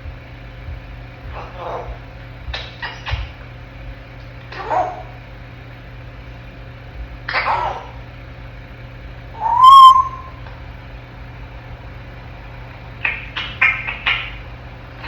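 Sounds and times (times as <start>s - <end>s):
parrot chirps: 9.4s - 10.4s
parrot whistling: 9.4s - 10.4s.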